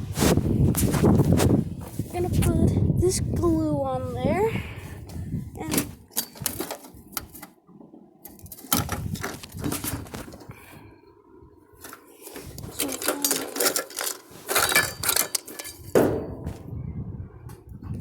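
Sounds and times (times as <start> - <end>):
small hard objects clattering: 11.8 - 16.0.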